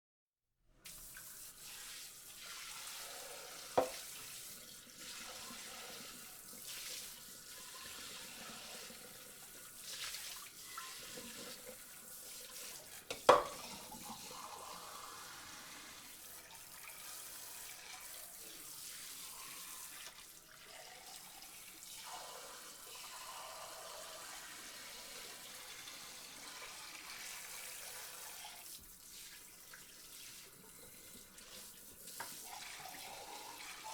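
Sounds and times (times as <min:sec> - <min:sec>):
water spraying over dishes: 0:00.9 - 0:20.5.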